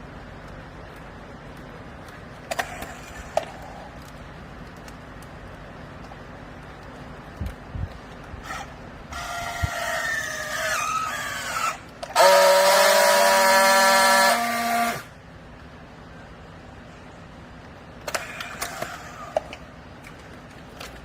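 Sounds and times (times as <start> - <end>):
hydraulic baler whining: 8.4 - 15.2.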